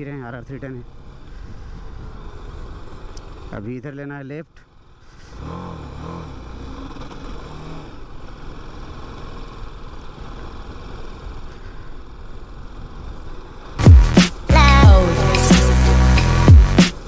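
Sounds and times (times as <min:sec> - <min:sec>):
wind and road noise: 0:00.0 - 0:14.7
motorcycle engine: 0:04.8 - 0:11.5, 0:12.1 - 0:17.0.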